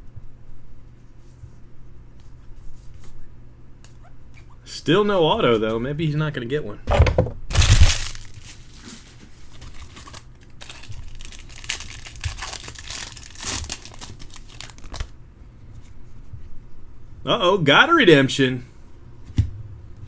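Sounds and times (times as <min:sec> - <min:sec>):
foil wrapper crinkling and tearing: 0:07.5 - 0:15.2.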